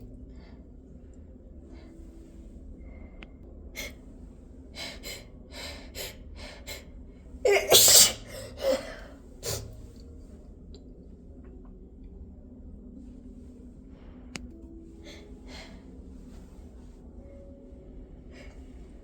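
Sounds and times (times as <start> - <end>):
woman sneezing: 7.5 - 9.7.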